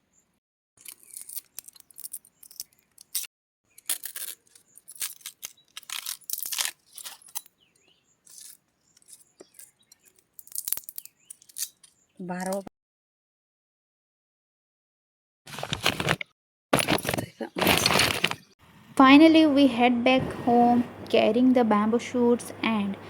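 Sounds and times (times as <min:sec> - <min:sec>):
bamboo husks tearing by hand: 0:00.8 - 0:07.5, 0:10.4 - 0:11.9.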